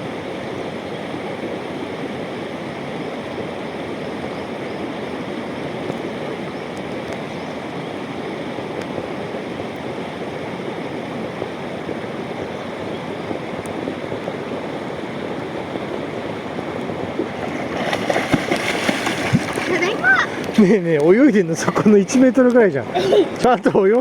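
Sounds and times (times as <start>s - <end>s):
river water rushing: 13.4s - 23.6s
splashing in water: 17.2s - 23.5s.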